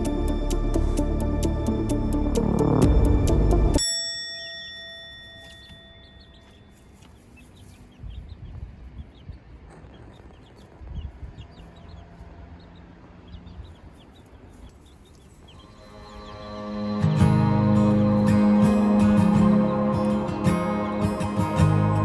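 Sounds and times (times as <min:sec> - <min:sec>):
low rumbles: 0:00.0 - 0:03.8
music chord ringing: 0:00.0 - 0:06.9, 0:15.6 - 0:22.0
chicks peeping: 0:05.4 - 0:22.0.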